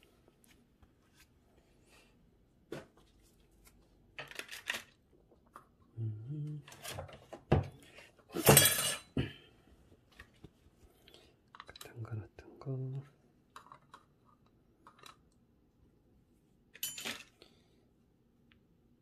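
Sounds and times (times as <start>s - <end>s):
metal parts clinking in container: 16.8s - 17.4s.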